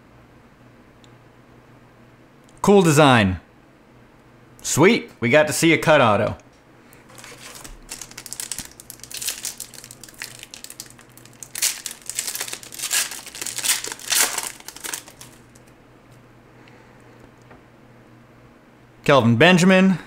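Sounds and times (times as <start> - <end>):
foil wrapper crinkling and tearing: 7.0 - 15.7.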